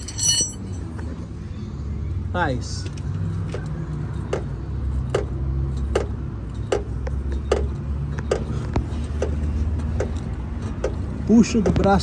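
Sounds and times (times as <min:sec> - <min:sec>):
car suspension knocking: 0:05.1 - 0:11.9.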